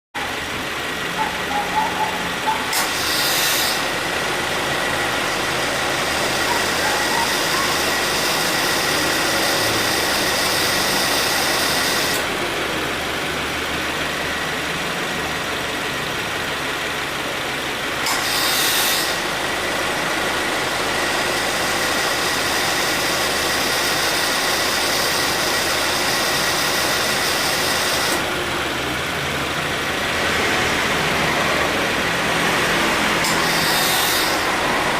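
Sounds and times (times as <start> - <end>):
car engine idling: 0.1 - 18.1, 19.0 - 34.9
ac compressor engaging harshly: 2.3 - 12.3
compressor hiss: 2.7 - 4.1.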